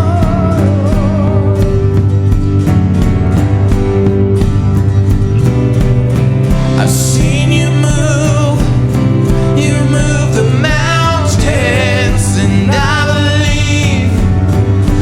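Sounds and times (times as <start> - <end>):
person singing: 0.0 - 2.3, 6.7 - 15.0
band playing with guitar: 0.0 - 15.0.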